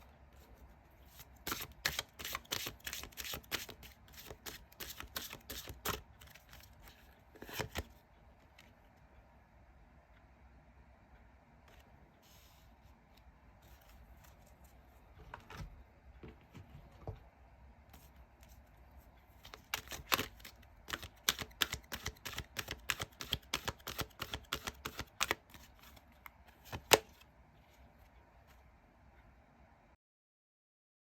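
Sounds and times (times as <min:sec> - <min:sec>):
cards shuffling and snapping: 0:01.4 - 0:06.6, 0:19.4 - 0:26.0, 0:26.6 - 0:27.2.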